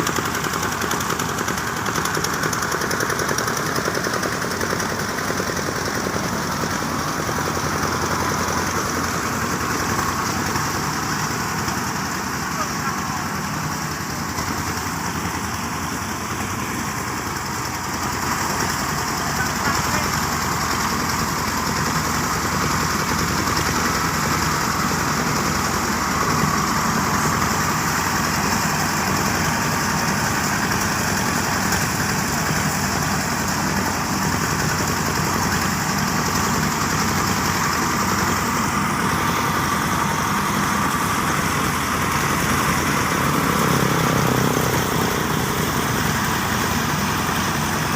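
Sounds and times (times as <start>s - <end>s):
threshing machine engine running: 0.0s - 47.9s.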